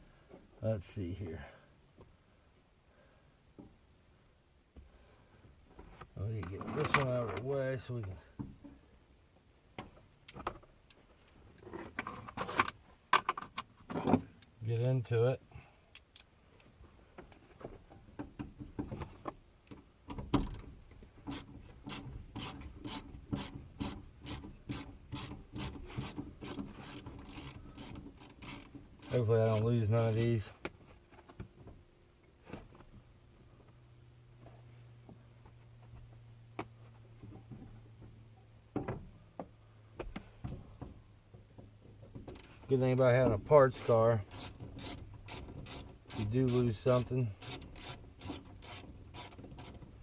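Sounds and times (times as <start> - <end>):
hand ratchet clicking: 21.3 - 30.3, 43.8 - 46.6, 47.4 - 49.8.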